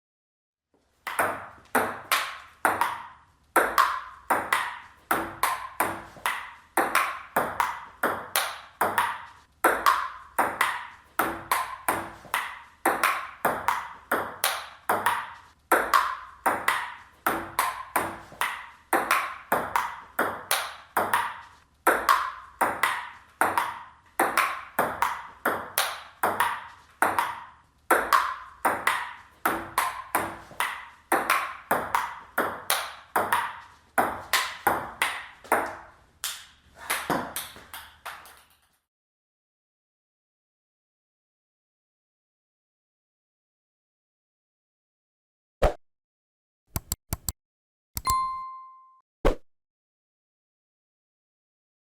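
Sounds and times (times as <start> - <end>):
table tennis ball clicks: 46.7 - 47.4.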